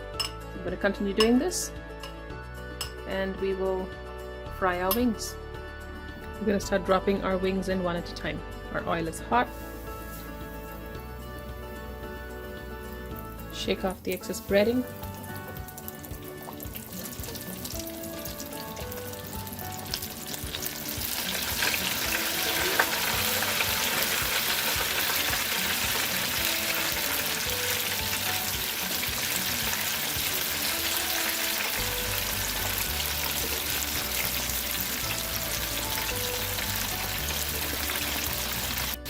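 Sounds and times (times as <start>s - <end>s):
light background music: 0.0s - 39.0s
chicken wings sizzling in oil: 12.8s - 39.0s.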